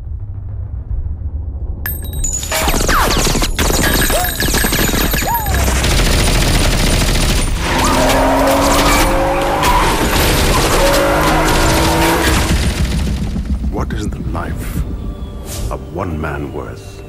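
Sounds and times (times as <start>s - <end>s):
rapid gunfire: 2.6s - 13.6s
car engine drone: 5.8s - 17.0s.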